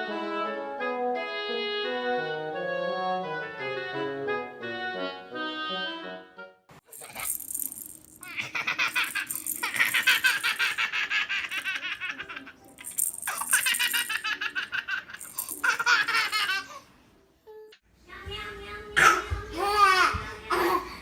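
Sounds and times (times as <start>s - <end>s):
baby giggling: 7.0s - 7.4s, 8.2s - 16.8s.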